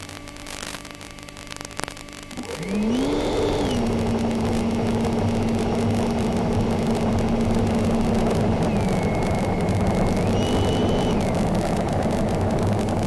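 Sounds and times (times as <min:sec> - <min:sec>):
model jet motor whine: 0:02.3 - 0:13.0
rushing air noise: 0:03.0 - 0:13.0.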